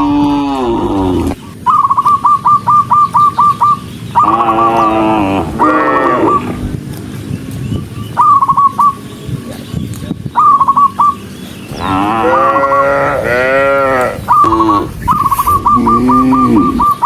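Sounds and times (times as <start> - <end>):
cattle mooing: 0.0 - 1.4, 4.2 - 6.6, 11.7 - 17.0
short trilling high chirps: 14.3 - 17.0.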